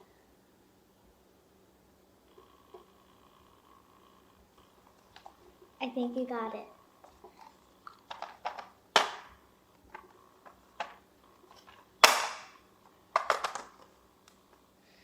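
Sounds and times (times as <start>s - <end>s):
plastic toy pieces clacking: 7.9s - 9.2s, 13.1s - 13.9s.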